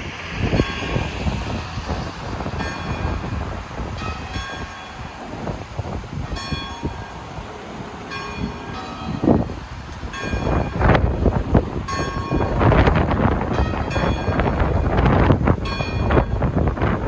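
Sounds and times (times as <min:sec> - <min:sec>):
wind gusts on microphone: 0:00.0 - 0:17.0
church bell tolling: 0:00.4 - 0:01.5, 0:02.5 - 0:03.4, 0:04.0 - 0:05.2, 0:06.3 - 0:07.3, 0:08.1 - 0:16.6.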